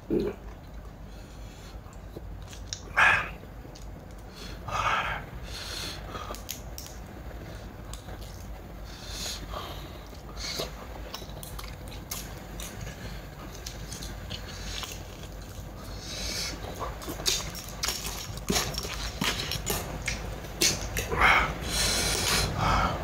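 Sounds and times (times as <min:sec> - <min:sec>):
chewing with small clicks: 0:01.8 - 0:02.9, 0:06.2 - 0:07.1, 0:07.9 - 0:21.1.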